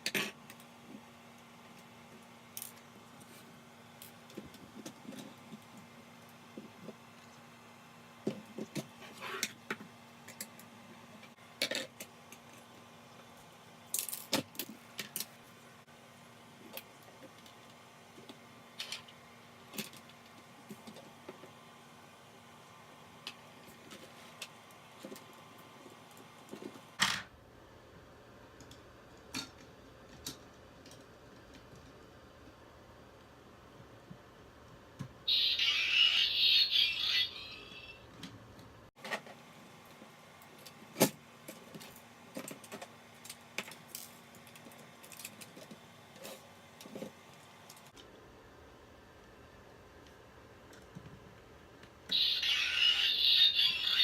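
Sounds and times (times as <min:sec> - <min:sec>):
plastic toy parts clicking and rattling: 0:41.5 - 0:47.1.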